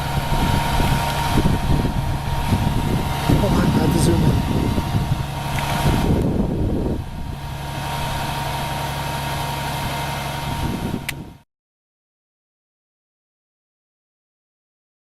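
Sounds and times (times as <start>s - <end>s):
vehicle engine idling: 0.0s - 11.4s.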